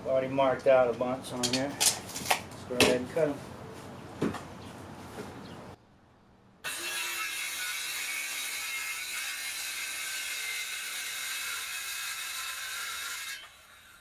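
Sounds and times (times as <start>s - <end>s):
power saw cutting board: 6.6s - 14.0s.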